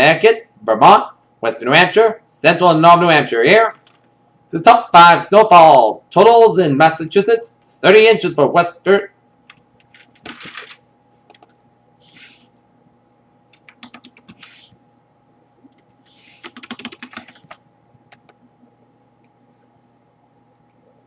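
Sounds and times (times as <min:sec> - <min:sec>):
soft hissy noises: 0:12.0 - 0:12.6, 0:15.9 - 0:17.6.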